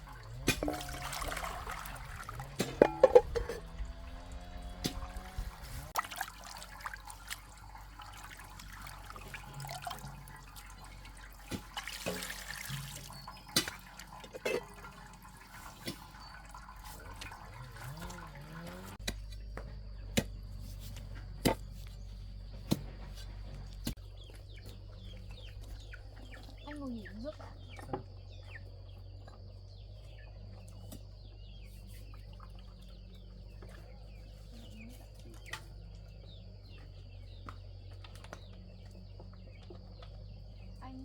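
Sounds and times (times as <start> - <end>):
water splashing and dripping: 0.0 - 19.0.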